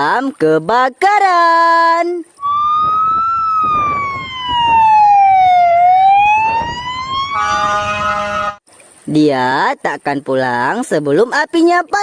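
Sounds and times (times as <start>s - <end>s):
fire engine siren wailing: 2.4s - 8.6s.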